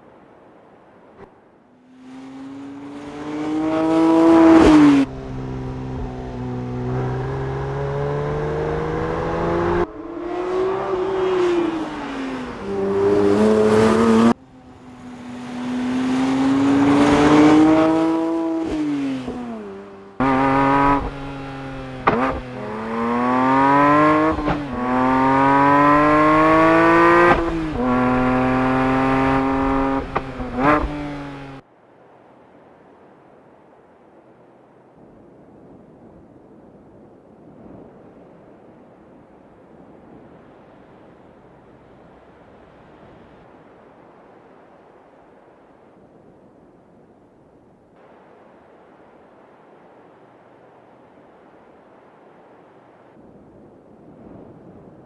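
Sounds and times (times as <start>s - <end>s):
car engine revving hard: 2.0s - 31.6s
quick gear upshifts: 2.0s - 31.6s.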